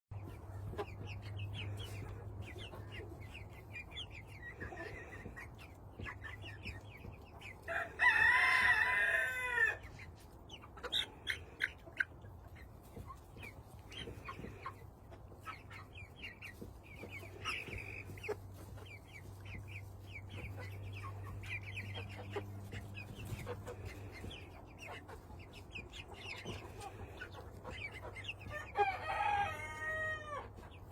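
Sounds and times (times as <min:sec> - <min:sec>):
chickens clucking: 0:00.1 - 0:30.9
rooster crowing: 0:07.7 - 0:09.8, 0:28.5 - 0:30.4.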